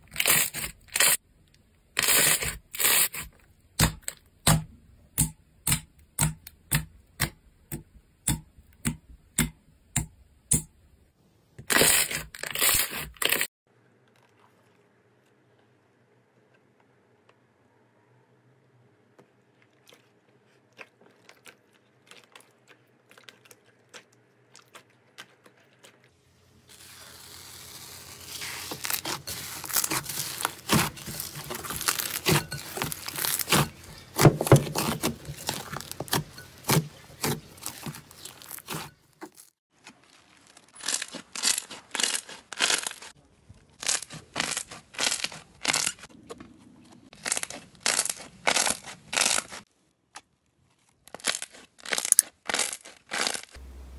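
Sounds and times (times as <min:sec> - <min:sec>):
slime crackling and popping: 0:26.7 - 0:43.1, 0:47.1 - 0:49.6, 0:51.0 - 0:53.6.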